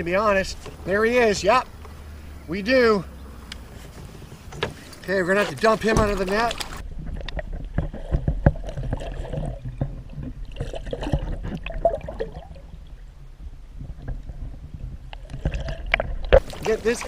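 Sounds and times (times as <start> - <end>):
light water sounds: 3.6 - 17.0
knocks in a kayak: 5.8 - 9.1.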